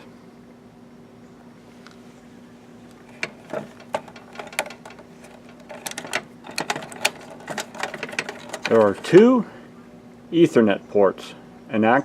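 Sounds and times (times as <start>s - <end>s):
steady low hum: 0.0s - 12.0s
light clicks and knocks of handling: 2.9s - 9.0s.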